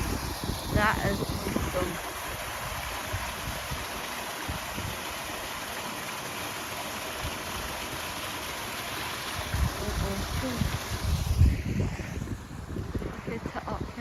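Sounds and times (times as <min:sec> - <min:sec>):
wind buffeting microphone: 0:00.0 - 0:03.9, 0:09.4 - 0:14.0.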